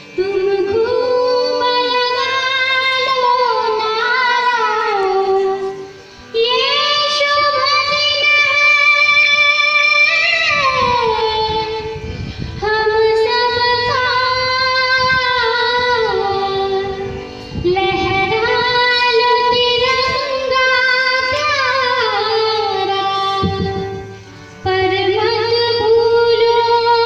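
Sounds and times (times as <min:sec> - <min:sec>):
girl singing: 0:00.0 - 0:27.0.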